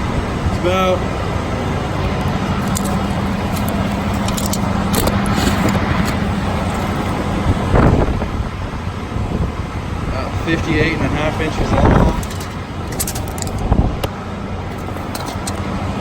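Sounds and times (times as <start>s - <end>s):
steady loud background drone: 0.0s - 16.0s
light metallic clicks and rattles: 2.2s - 7.5s, 12.0s - 14.1s, 14.7s - 15.8s.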